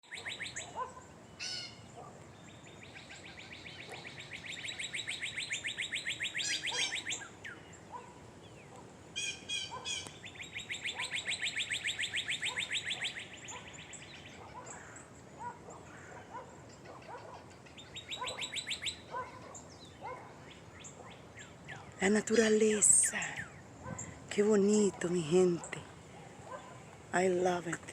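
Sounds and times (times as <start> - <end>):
bird high rapid trill: 0.0 - 1.8, 2.8 - 7.8, 9.2 - 15.0, 16.8 - 21.0
short high bird chirps: 17.8 - 19.1.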